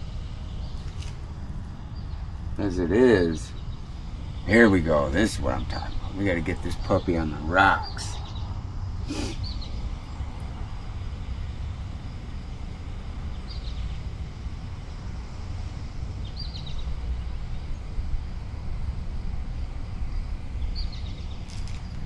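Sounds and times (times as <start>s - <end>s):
low rumbling noise: 0.0s - 22.0s
faint bird chirps: 1.9s - 10.3s, 16.2s - 17.9s.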